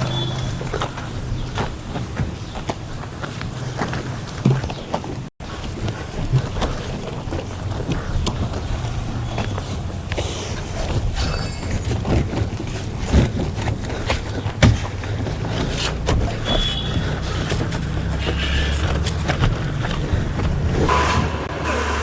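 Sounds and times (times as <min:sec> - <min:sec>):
water spraying: 0:20.6 - 0:22.0
sharp knocks: 0:20.8 - 0:22.0
pump humming: 0:20.9 - 0:22.0.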